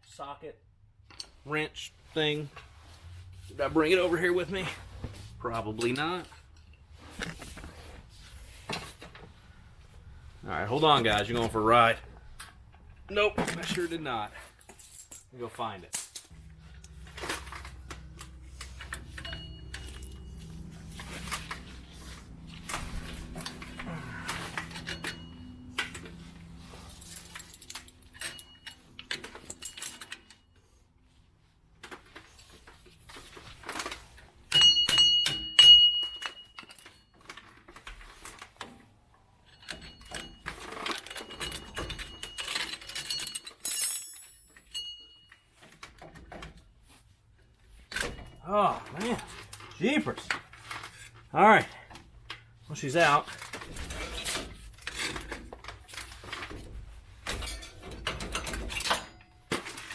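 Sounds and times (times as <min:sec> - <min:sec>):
metal tools clinking: 0:10.8 - 0:30.8, 0:32.2 - 0:38.5, 0:39.4 - 0:46.5, 0:47.8 - 0:59.9
low steady hum: 0:16.2 - 0:30.6
ringing metal clanks: 0:17.2 - 0:21.4, 0:23.3 - 0:26.2, 0:27.2 - 0:30.4, 0:34.5 - 0:37.1, 0:39.4 - 0:45.7.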